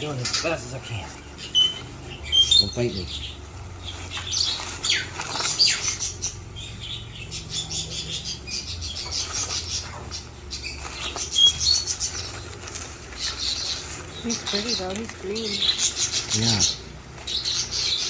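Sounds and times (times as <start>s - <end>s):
bag rustling and scratching: 3.8s - 6.1s, 9.2s - 16.6s.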